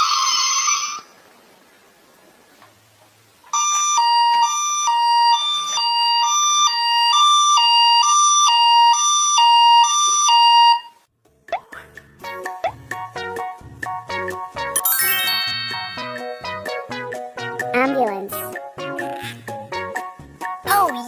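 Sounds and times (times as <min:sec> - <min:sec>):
toy two-tone siren: 0:03.6 - 0:11.0.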